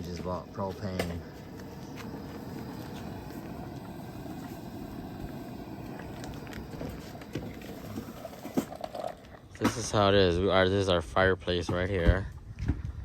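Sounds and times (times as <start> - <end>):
gas stove burner flame rushing: 0.0 - 10.2.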